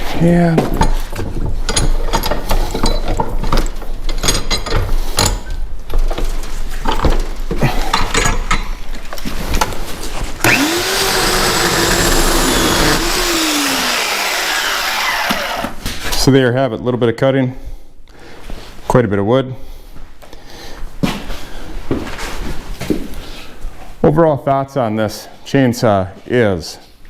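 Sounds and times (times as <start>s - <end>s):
electric chainsaw running: 10.4s - 15.8s.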